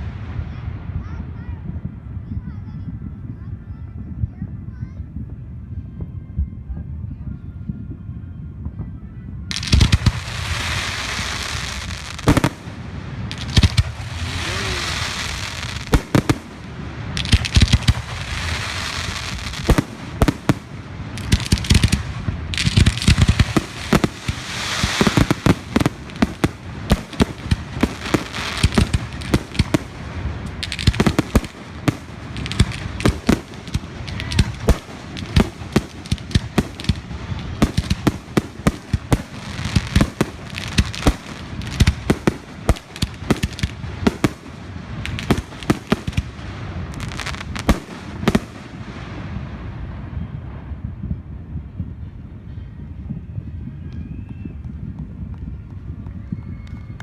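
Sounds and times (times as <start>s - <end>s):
crackling hiss of fireworks: 0.0s - 4.0s, 8.8s - 57.0s
fireworks bangs and cracks: 9.5s - 50.8s.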